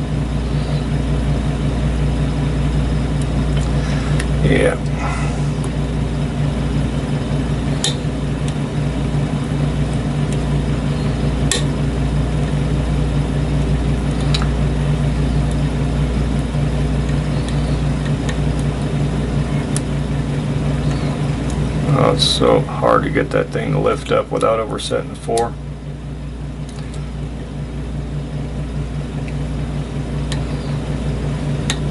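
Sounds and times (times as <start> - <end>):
steady low hum: 0.0 - 31.9.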